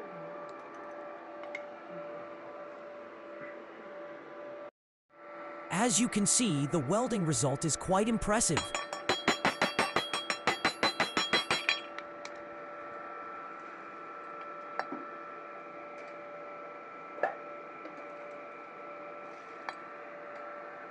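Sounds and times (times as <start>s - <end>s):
steady hum: 0.0s - 20.9s
hammer tapping on metal: 8.6s - 11.9s.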